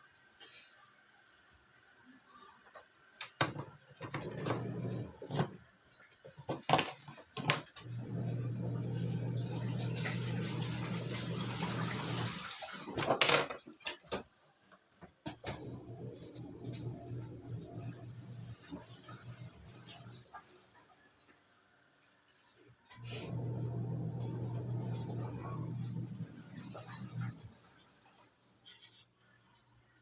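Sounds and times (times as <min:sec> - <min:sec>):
washing machine motor hum: 0:01.8 - 0:13.2, 0:15.1 - 0:20.6, 0:22.9 - 0:28.2
water rushing into tub: 0:08.8 - 0:13.2.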